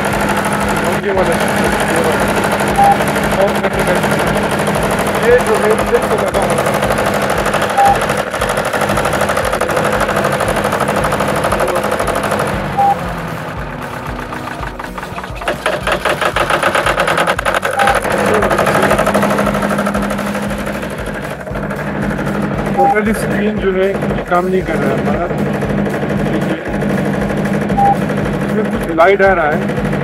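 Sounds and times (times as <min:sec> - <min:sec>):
generator engine running: 0:00.0 - 0:30.0
short high beep: 0:02.8 - 0:03.0, 0:07.8 - 0:08.0, 0:12.8 - 0:13.0, 0:22.8 - 0:23.0, 0:27.8 - 0:28.0.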